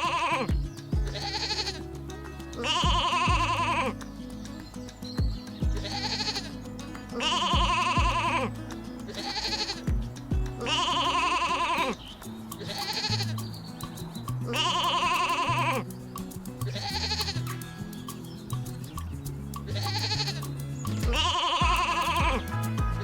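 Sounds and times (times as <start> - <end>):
quavering animal bleats: 0.0 - 0.5, 1.1 - 1.8, 2.6 - 3.9, 5.8 - 6.6, 9.1 - 9.9, 10.6 - 12.0, 12.6 - 13.5, 14.5 - 15.8, 16.7 - 17.6, 19.7 - 23.0
background music with bass: 0.0 - 23.0.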